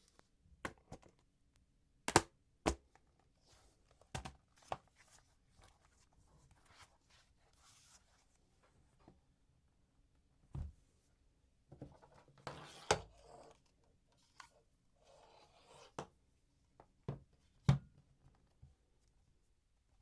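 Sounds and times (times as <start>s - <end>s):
soft rubbing and rustling: 3.4s - 9.1s.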